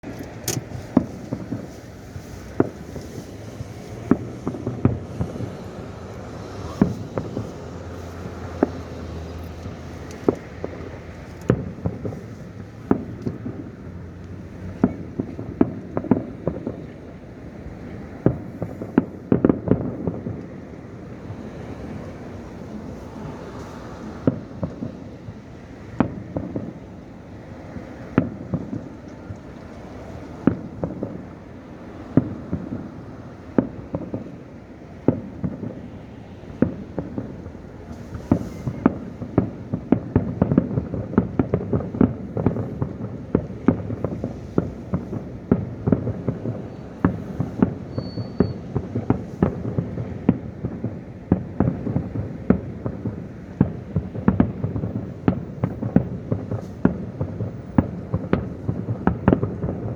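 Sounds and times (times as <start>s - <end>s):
fireworks bangs: 0.0s - 59.9s.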